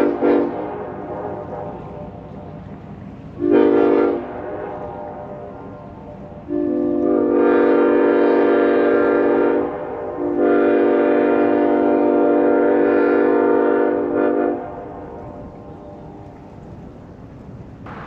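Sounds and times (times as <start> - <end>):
train air horn blasts: 0.0 - 16.4.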